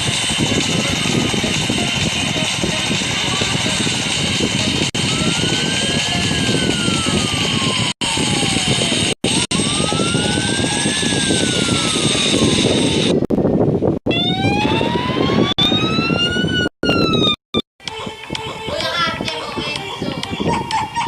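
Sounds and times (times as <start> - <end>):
aircraft engine whine: 0.0 - 13.4.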